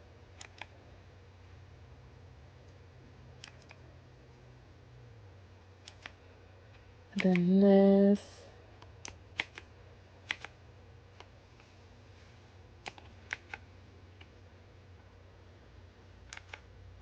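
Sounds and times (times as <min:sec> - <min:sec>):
mechanical keyboard clicks: 0:00.4 - 0:00.7, 0:03.4 - 0:03.8, 0:05.8 - 0:06.2, 0:09.0 - 0:09.7, 0:10.3 - 0:10.6, 0:12.8 - 0:13.6, 0:16.3 - 0:16.6.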